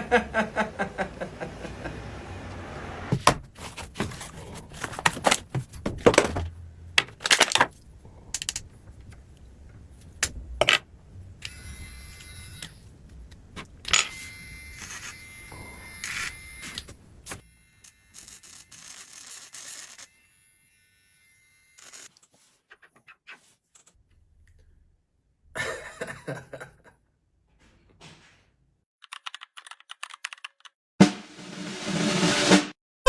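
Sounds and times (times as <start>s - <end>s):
small motor whirring: 11.4s - 12.9s, 14.1s - 22.2s.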